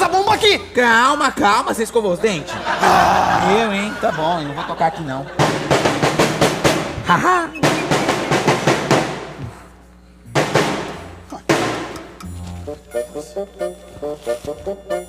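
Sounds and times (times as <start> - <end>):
person laughing: 2.5 - 5.2
bass drum beats: 5.4 - 12.9.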